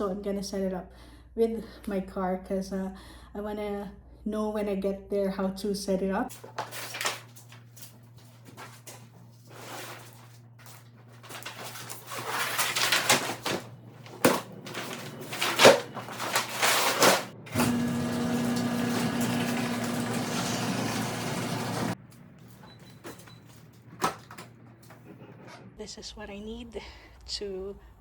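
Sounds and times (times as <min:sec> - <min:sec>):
gear rustling and clicking: 0:06.3 - 0:17.3
small electric motor humming: 0:17.5 - 0:22.0.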